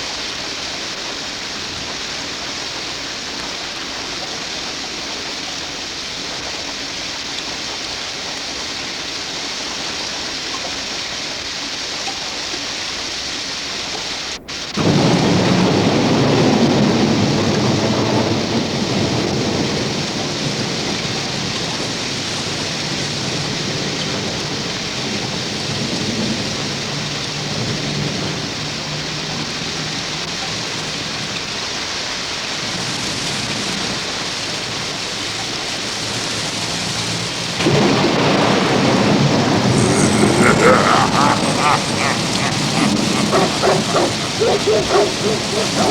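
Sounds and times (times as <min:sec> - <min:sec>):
rain falling: 0:00.0 - 0:45.9
thunder peal: 0:14.8 - 0:30.1, 0:36.0 - 0:45.9.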